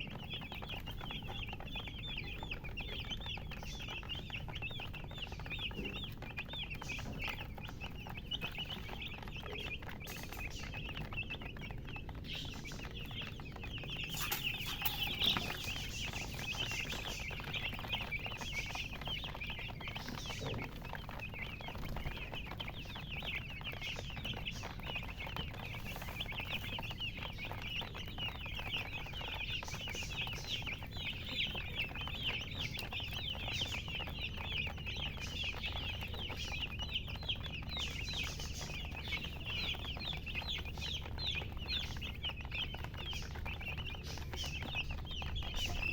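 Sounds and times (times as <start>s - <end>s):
chicks peeping: 0.0s - 45.9s.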